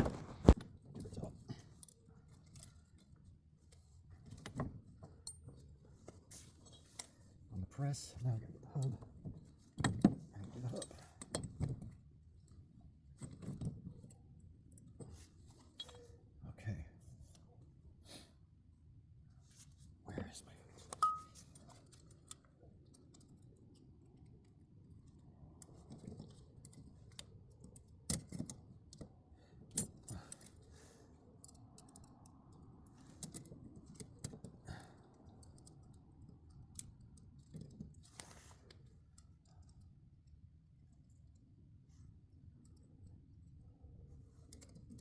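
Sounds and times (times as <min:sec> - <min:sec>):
faint low hum: 0:00.0 - 0:45.0
metal tools clicking and clinking: 0:13.2 - 0:16.2, 0:20.9 - 0:23.5, 0:29.7 - 0:30.7.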